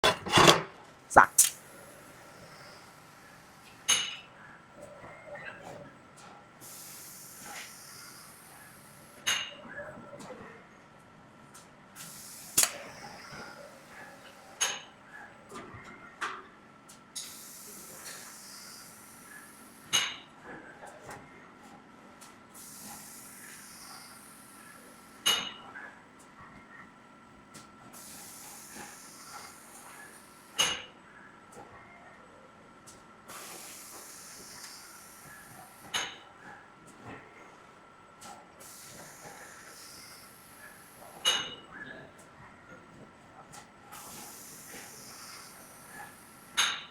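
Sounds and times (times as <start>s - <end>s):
hiss: 6.6s - 9.4s, 12.0s - 14.3s, 17.2s - 20.1s, 22.6s - 25.4s, 28.0s - 30.8s, 33.3s - 36.2s, 38.6s - 41.5s, 43.9s - 46.9s
air hissing: 38.6s - 41.1s, 44.0s - 46.8s.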